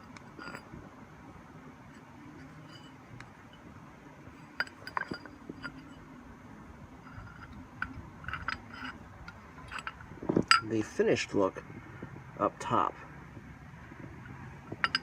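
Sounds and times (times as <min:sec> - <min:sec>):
metallic hardware clinks: 0:00.0 - 0:00.7, 0:02.4 - 0:03.7, 0:04.4 - 0:06.0, 0:07.0 - 0:10.7, 0:14.7 - 0:15.0
low steady hum: 0:00.0 - 0:15.0.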